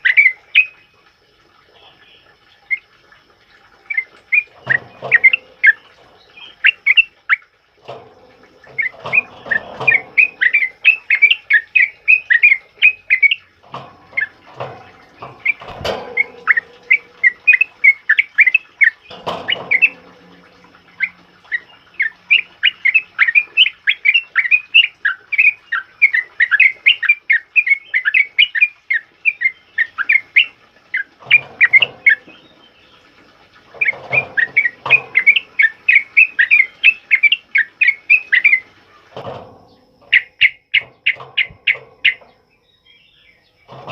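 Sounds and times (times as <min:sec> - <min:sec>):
bird singing fast sharp chirps: 0:08.6 - 0:13.5, 0:33.8 - 0:38.6.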